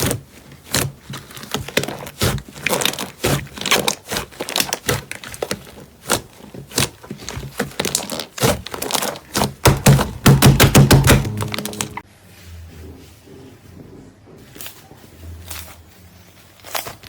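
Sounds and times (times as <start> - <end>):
slime popping: 0.0 - 12.0.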